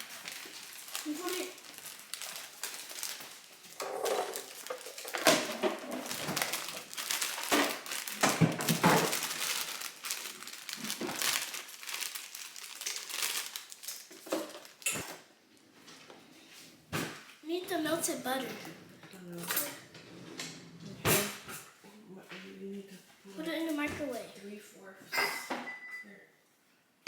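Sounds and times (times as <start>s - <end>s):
plastic packaging crinkling: 0.0s - 15.1s.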